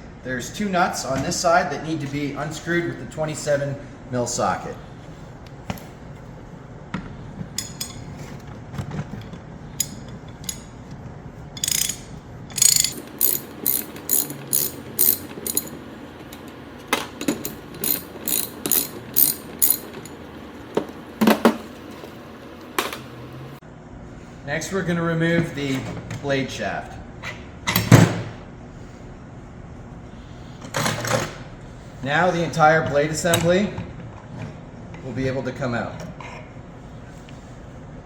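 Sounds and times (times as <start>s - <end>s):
ratchet wrench clicking: 11.6s - 15.8s, 17.4s - 20.1s.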